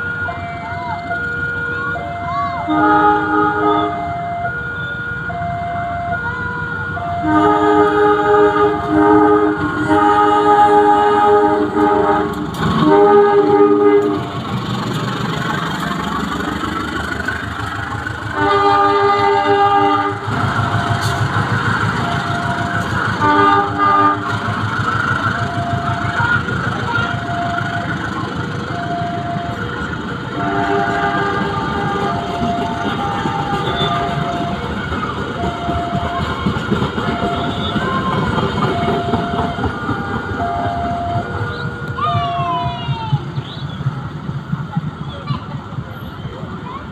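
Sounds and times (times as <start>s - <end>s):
train rumbling: 0.0s - 46.9s
locomotive chord horn blasts: 2.6s - 5.2s, 6.1s - 14.6s, 18.0s - 29.7s, 30.3s - 42.0s.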